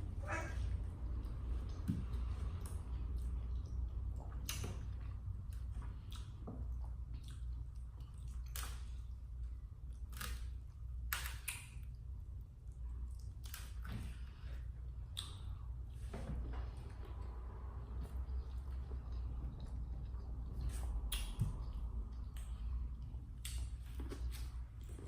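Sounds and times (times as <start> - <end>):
steady low hum: 0.0 - 25.0
person chewing: 1.2 - 9.2, 17.9 - 25.0
wet mouth smacks and clicks: 15.1 - 15.5, 21.0 - 22.5.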